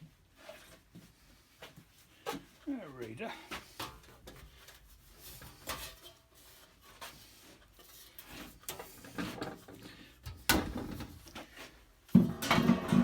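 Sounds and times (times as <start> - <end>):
objects knocking and clattering: 8.2 - 11.5, 12.1 - 13.0.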